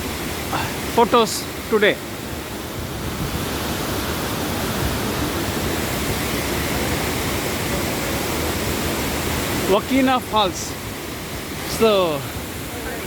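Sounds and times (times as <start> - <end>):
waterfall roaring: 0.0 - 13.0.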